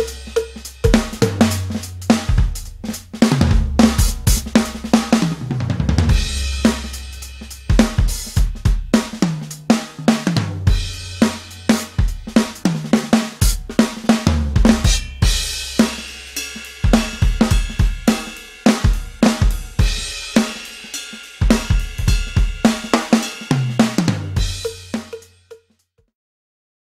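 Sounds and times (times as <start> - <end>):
deep sustained bass notes: 0.0 - 7.8
crash cymbals: 0.0 - 25.4
drum kit playing fast beats: 0.0 - 25.6.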